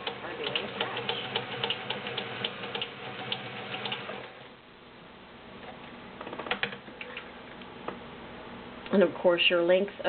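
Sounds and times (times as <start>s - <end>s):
sewing machine clattering: 0.0s - 4.3s.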